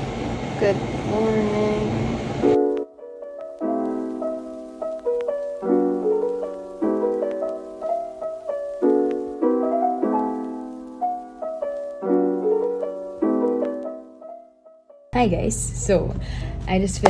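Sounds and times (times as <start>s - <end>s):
keyboard chords and melody: 2.4s - 15.1s.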